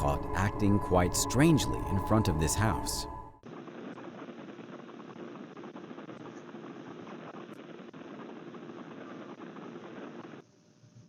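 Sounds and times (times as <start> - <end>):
faint low hum: 0.0 - 3.4.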